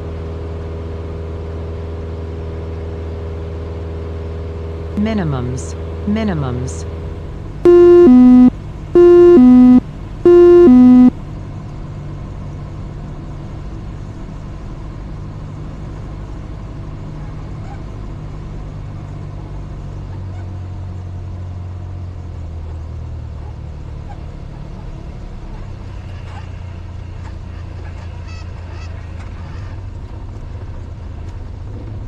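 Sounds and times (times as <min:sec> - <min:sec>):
two-tone electronic alert beeps: 0:07.7 - 0:11.1.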